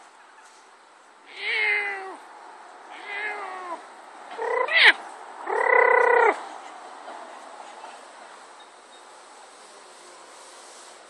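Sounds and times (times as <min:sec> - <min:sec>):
cat yowling: 0:01.3 - 0:02.2, 0:02.9 - 0:06.4.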